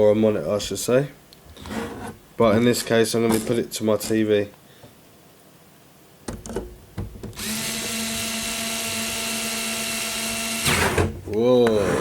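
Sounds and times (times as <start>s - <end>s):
electric screwdriver running: 7.4s - 11.0s.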